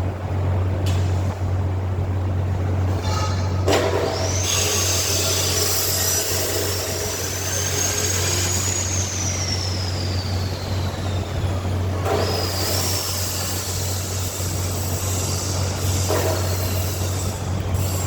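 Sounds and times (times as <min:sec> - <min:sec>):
low machine hum: 0:00.0 - 0:18.0
high-pitched spinning whine: 0:02.9 - 0:18.0.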